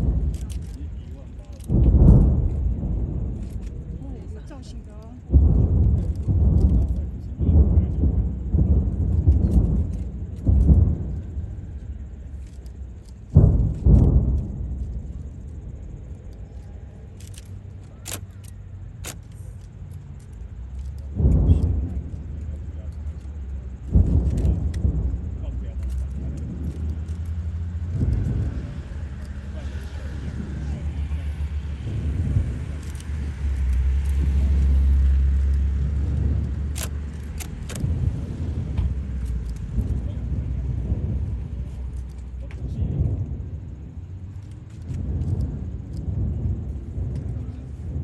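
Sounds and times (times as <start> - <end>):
sharp firework pops: 0.0 - 16.6
fireworks sharp cracks: 0.0 - 43.8
low fireworks rumble: 0.0 - 48.0.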